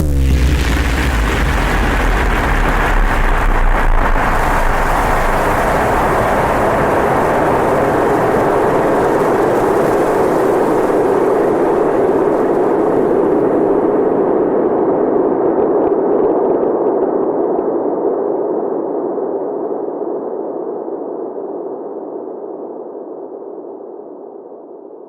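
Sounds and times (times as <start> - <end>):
cinematic rushing rumble: 0.0 - 7.7.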